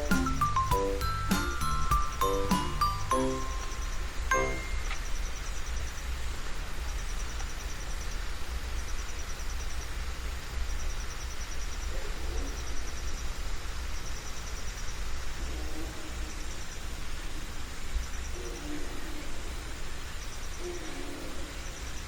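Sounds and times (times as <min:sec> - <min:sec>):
high fast pulsing chirp: 0:00.0 - 0:05.4.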